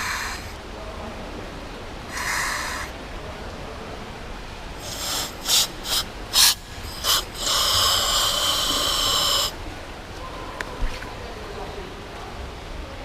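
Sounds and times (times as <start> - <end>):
scuba regulator air hissing: 0.0 - 0.6, 2.1 - 2.9, 4.8 - 9.6.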